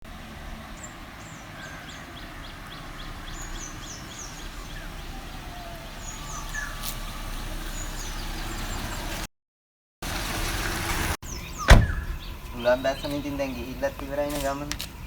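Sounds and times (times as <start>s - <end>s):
small birds chirping: 0.4s - 9.3s, 11.2s - 15.0s.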